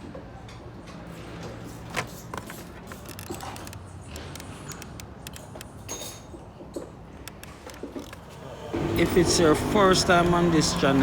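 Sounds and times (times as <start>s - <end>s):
steady low hum: 8.2s - 11.0s.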